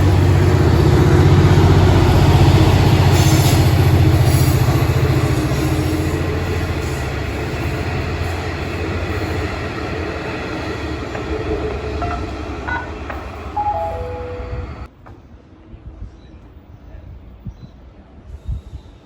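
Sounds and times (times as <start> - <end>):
train rumbling on tracks: 0.0 - 19.0
short descending tones: 12.0 - 14.9.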